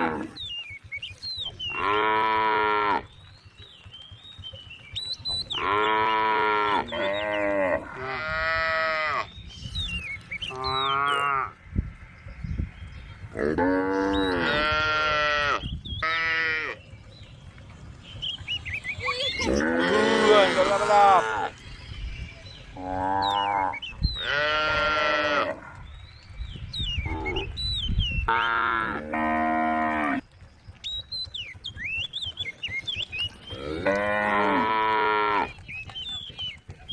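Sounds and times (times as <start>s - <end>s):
cows mooing: 0.0s - 0.4s, 1.7s - 3.1s, 5.5s - 9.3s, 10.5s - 11.6s, 13.3s - 16.8s, 19.0s - 21.6s, 22.7s - 25.8s, 28.3s - 30.2s, 33.5s - 35.6s.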